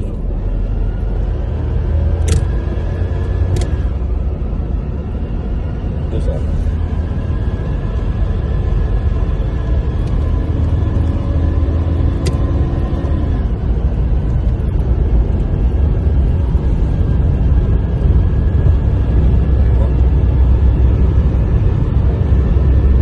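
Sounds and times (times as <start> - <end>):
car engine rumbling: 0.0 - 23.0
sharp click: 2.2 - 2.6, 3.5 - 3.8, 12.2 - 12.5.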